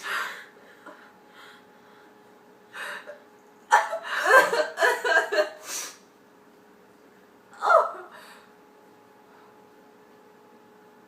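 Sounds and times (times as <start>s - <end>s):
young woman laughing: 3.0s - 5.6s.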